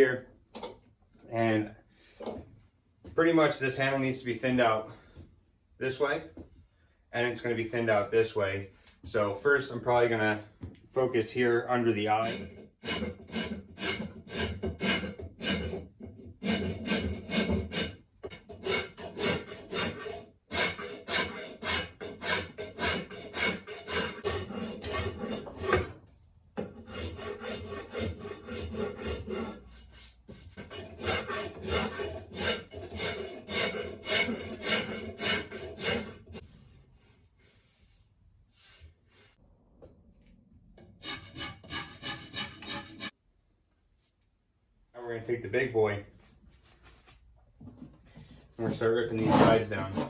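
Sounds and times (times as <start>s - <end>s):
file rasping on wood: 12.1s - 26.0s, 26.6s - 36.4s, 41.0s - 43.2s, 49.2s - 50.0s.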